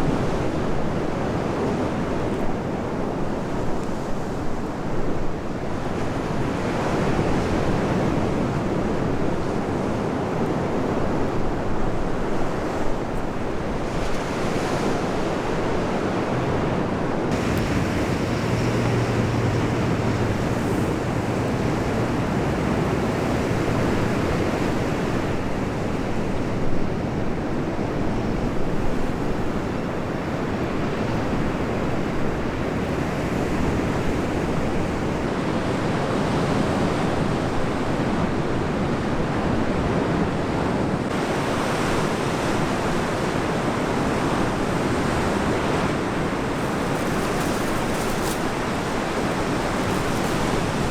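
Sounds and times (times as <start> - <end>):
sea waves washing on shore: 12.3 - 37.4, 41.2 - 50.9
low hum: 17.3 - 24.4
wind on microphone: 17.3 - 27.4.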